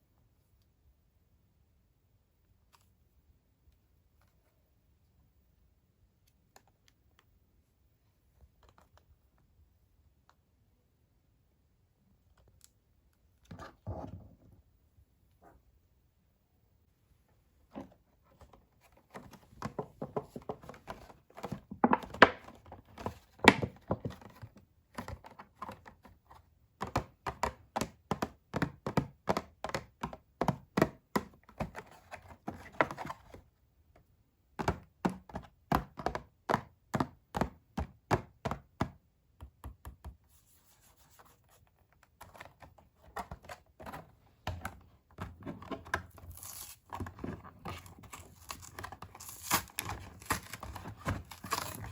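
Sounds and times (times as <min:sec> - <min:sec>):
plastic and cardboard packaging clicks: 0:42.2 - 0:51.9.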